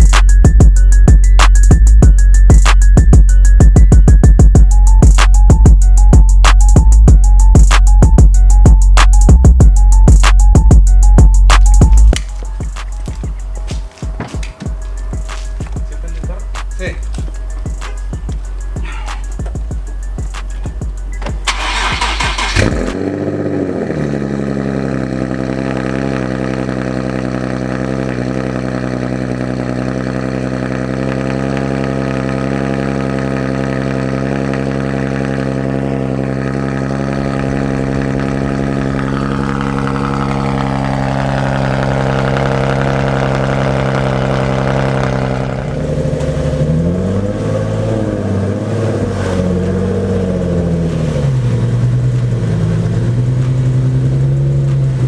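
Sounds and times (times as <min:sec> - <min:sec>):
car engine starting and idling: 0:04.6 - 0:55.0
engine revving: 0:15.2 - 0:55.0.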